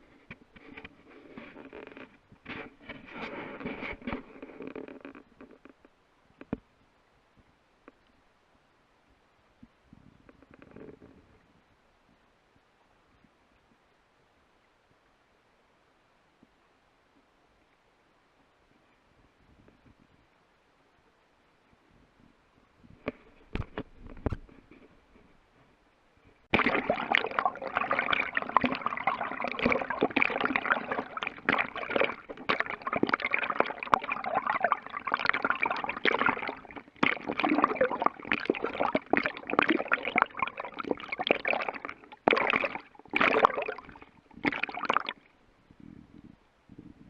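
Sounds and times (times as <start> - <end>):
water sloshing and gurgling: 0.0 - 5.8, 26.4 - 45.3.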